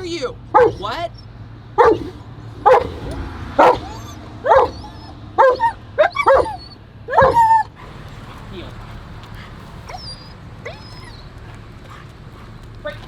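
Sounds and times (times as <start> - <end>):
dog whining: 0.4 - 8.4, 9.4 - 13.0
dog barking and yipping: 0.5 - 7.9, 9.4 - 13.0.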